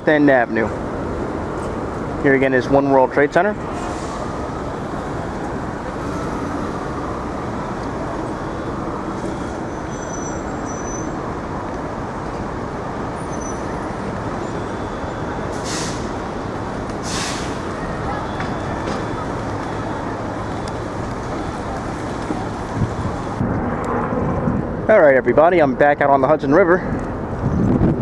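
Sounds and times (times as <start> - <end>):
city street traffic: 0.0 - 28.0
air brake hisses: 3.6 - 11.2, 15.4 - 18.0
faint high squeals: 3.7 - 11.7, 12.6 - 23.4.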